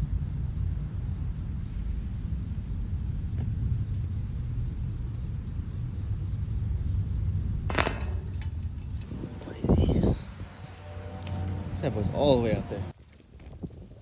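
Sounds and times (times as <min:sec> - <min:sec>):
wind buffeting microphone: 0:00.0 - 0:10.8, 0:12.4 - 0:14.0
sharp rustling clatter: 0:07.7 - 0:09.2.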